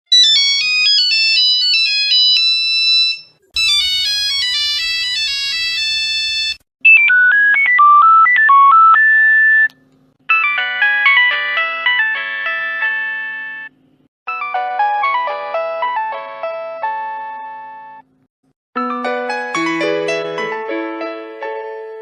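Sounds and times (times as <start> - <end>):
mobile phone ringtone melody: 0.1 - 9.7, 10.3 - 13.7, 14.3 - 17.9.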